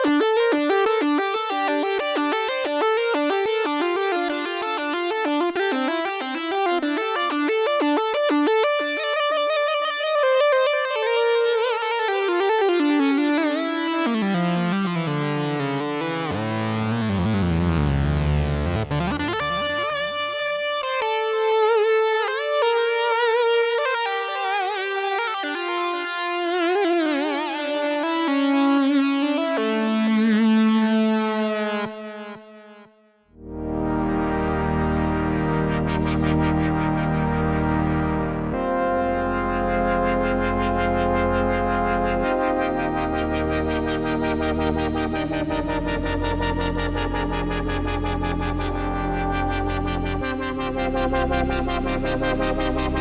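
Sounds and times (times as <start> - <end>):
synthesizer chords and bass notes: 13.1 - 21.4, 33.4 - 53.0.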